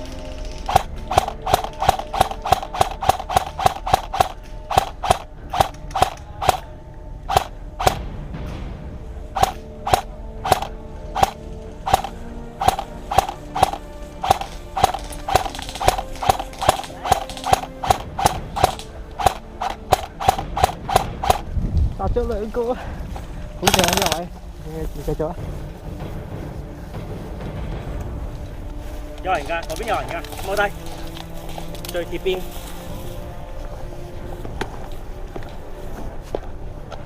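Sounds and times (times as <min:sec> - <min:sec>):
airsoft gun firing: 0:00.7 - 0:06.6, 0:07.3 - 0:08.0, 0:09.4 - 0:21.5, 0:23.6 - 0:24.2.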